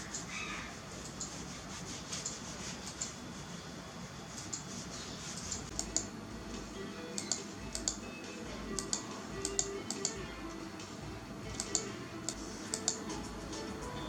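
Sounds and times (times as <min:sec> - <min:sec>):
faint background music: 0:00.0 - 0:14.0
sharp clicks: 0:05.5 - 0:06.2, 0:07.1 - 0:08.1, 0:08.7 - 0:10.2, 0:10.8 - 0:13.1.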